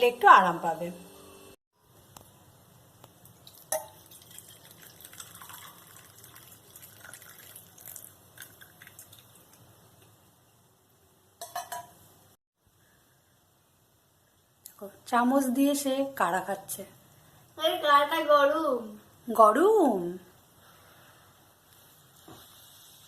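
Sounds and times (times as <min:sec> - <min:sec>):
liquid dripping and trickling: 0:03.2 - 0:10.2.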